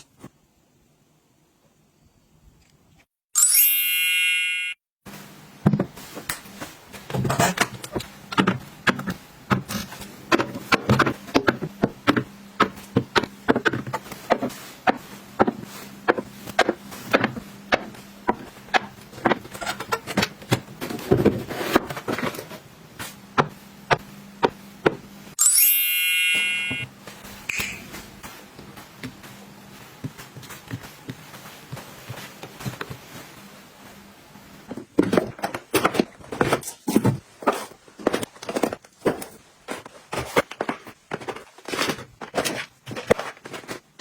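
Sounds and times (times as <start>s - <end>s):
items clicking and tapping: 5.6s - 25.1s, 26.3s - 33.3s, 34.7s - 44.0s.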